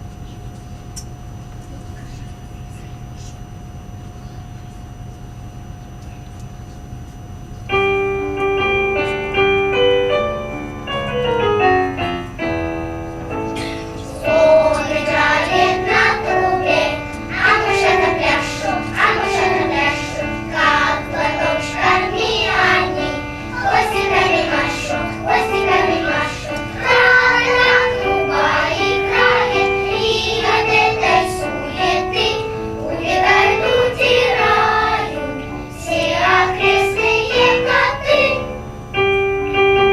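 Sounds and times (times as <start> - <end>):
piano: 7.3 - 39.9
children's choir singing: 13.5 - 38.7.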